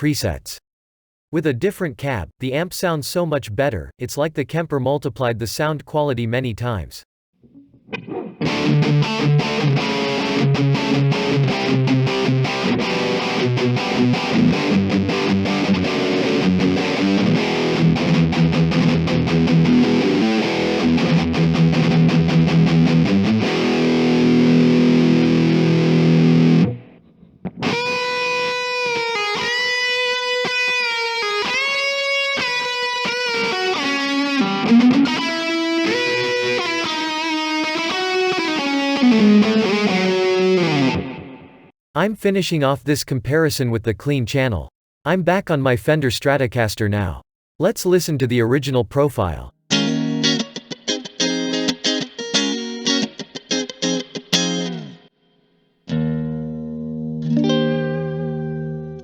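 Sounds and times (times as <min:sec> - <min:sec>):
distorted electric guitar: 0:07.4 - 0:41.7, 0:49.7 - 0:55.1, 0:55.9 - 0:59.0.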